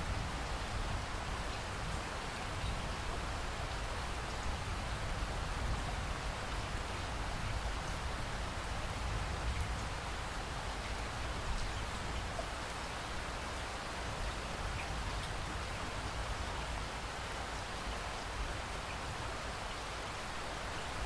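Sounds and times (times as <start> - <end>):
steady rain falling: 0.0 - 21.0.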